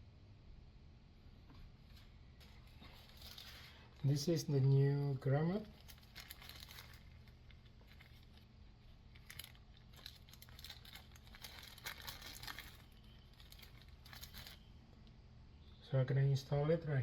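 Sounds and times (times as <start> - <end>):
low steady hum: 0.0 - 17.0
packaging crinkling: 2.4 - 14.7.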